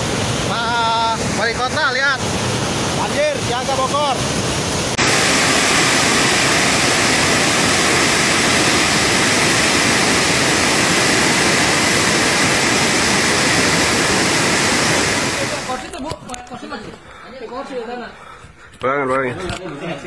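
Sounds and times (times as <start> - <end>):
water rushing: 0.0 - 16.0.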